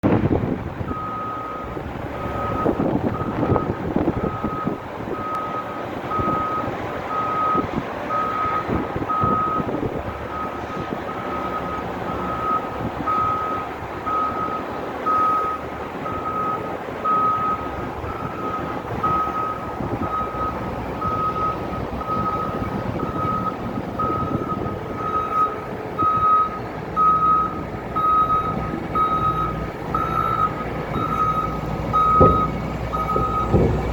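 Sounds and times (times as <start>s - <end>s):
diesel engine working: 0.0s - 33.9s
back-up alarm beeping: 11.3s - 33.6s.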